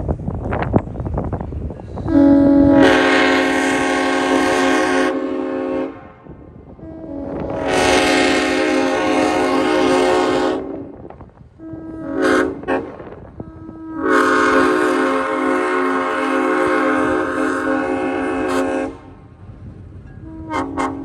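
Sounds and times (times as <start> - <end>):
locomotive air horn blasts: 2.0 - 19.3, 20.2 - 21.0.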